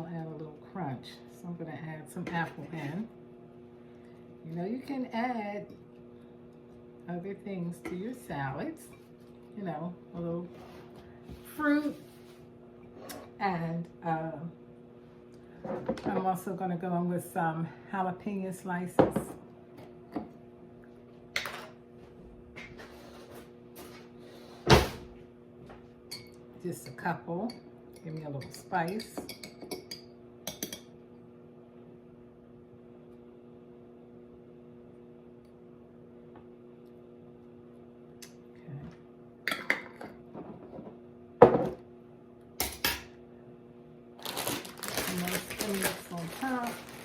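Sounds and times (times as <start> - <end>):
faint steady hum: 0.0 - 47.0
rustling scrape: 10.5 - 13.1
utensils clinking against bowl: 26.1 - 30.9.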